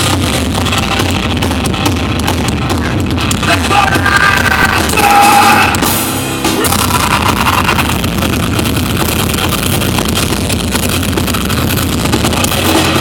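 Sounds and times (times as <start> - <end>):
electric guitars: 0.0 - 13.0
rock band playing live: 0.0 - 13.0
person singing or shouting: 3.4 - 5.8.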